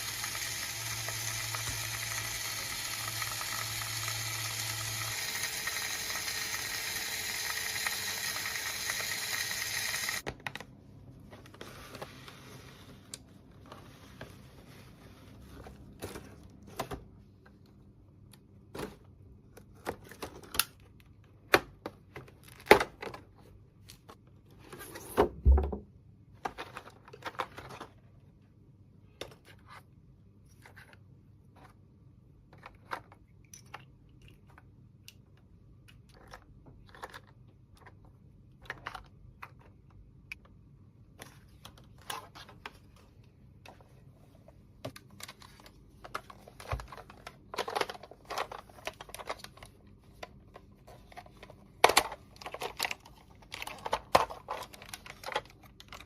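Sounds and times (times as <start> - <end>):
plastic toy pieces clicking: 0.0 - 10.2.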